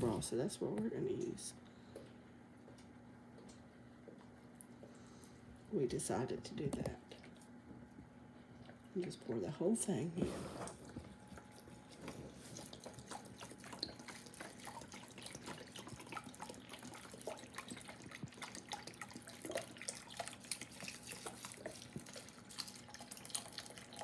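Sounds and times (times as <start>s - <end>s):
broth trickling and splashing: 10.6s - 24.0s.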